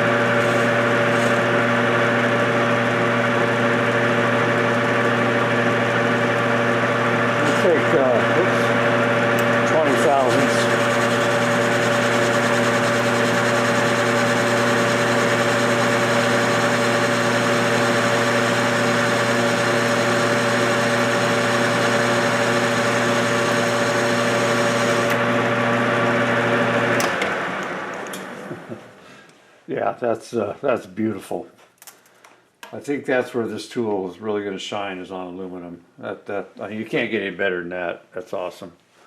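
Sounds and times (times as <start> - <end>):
metal lathe running: 0.0 - 28.2
lathe winding down: 0.0 - 28.7.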